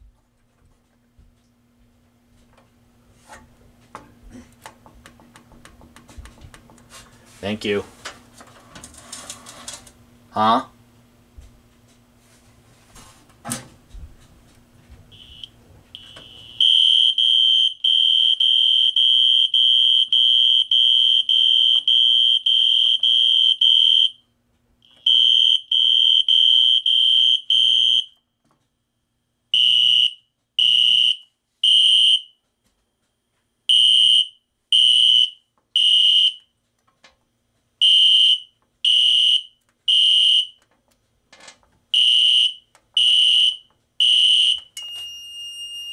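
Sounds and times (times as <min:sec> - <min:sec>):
fire alarm horn pulsing: 0:15.1 - 0:24.2, 0:24.8 - 0:28.2, 0:29.6 - 0:32.4, 0:33.7 - 0:36.5, 0:37.8 - 0:40.6, 0:42.0 - 0:45.9.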